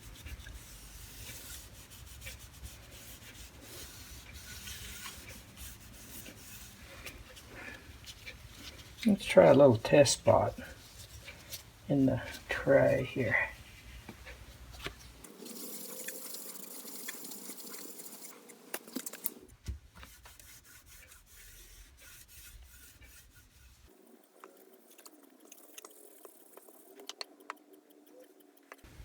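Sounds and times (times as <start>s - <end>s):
cloth rubbing on metal: 0.0s - 19.3s, 19.9s - 26.9s
small clicks: 24.4s - 28.9s.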